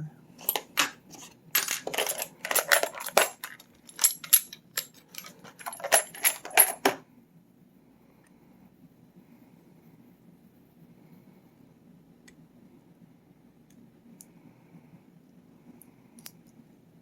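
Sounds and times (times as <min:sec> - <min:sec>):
small metal tools clinking: 0:00.4 - 0:07.0.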